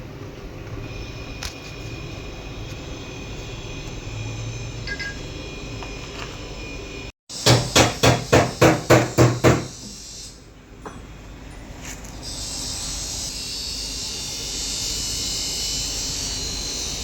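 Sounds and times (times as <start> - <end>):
faint high whine: 0.0 - 7.1.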